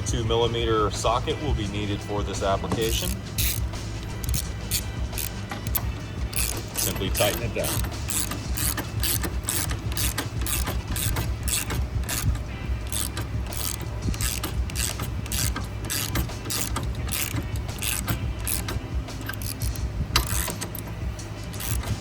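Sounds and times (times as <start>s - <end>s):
ratchet wrench clicking: 2.8s - 22.0s.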